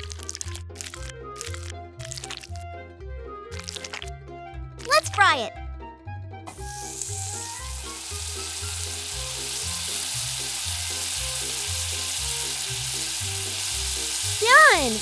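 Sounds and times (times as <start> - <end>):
background music: 0.0 - 15.0
food sizzling in oil: 6.5 - 15.0.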